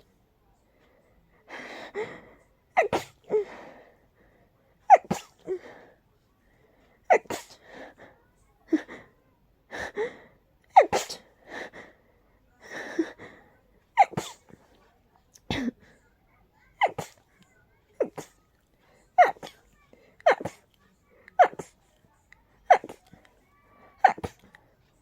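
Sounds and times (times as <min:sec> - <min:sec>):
quiet breaths: 0:00.0 - 0:25.0
person sneezing: 0:02.8 - 0:03.6, 0:04.9 - 0:05.7, 0:07.1 - 0:07.6, 0:10.8 - 0:11.3, 0:14.0 - 0:14.5, 0:16.8 - 0:17.2, 0:18.0 - 0:18.4, 0:20.2 - 0:20.7, 0:21.4 - 0:21.7, 0:22.7 - 0:23.1, 0:24.0 - 0:24.5.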